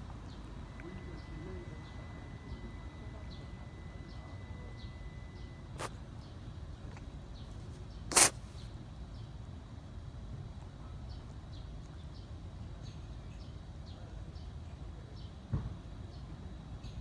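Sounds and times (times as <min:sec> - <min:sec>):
cat sneezing: 0:08.1 - 0:08.5.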